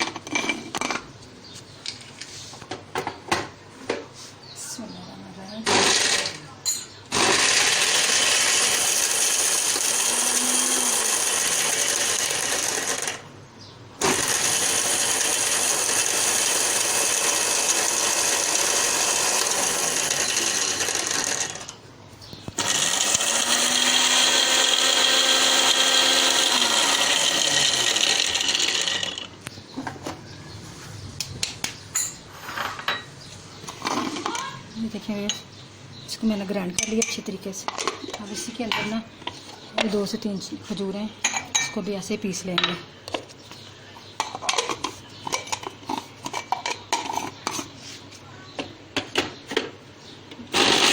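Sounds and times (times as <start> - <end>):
electric blender grinding: 5.7 - 6.4, 7.1 - 13.3, 14.0 - 21.8, 22.6 - 29.4, 50.5 - 50.9.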